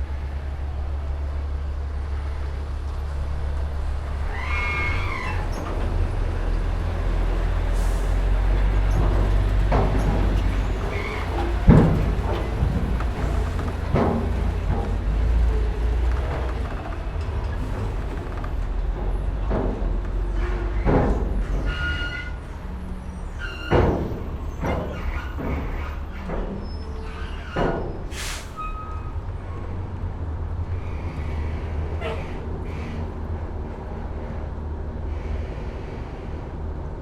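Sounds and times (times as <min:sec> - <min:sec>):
low engine rumble: 0:00.0 - 0:37.0
knocks and creaks: 0:02.2 - 0:29.9, 0:30.7 - 0:34.5
brief squealing tones: 0:04.2 - 0:05.8, 0:23.2 - 0:29.6.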